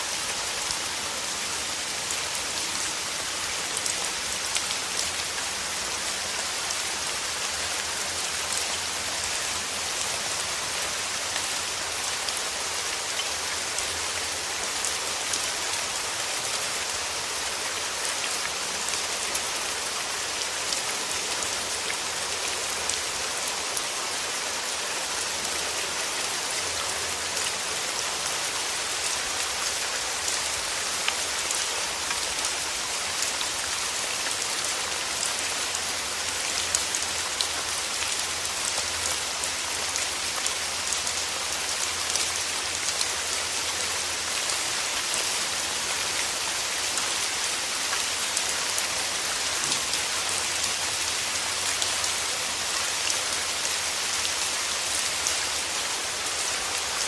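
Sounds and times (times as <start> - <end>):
steady rain pattering: 0.0 - 57.0.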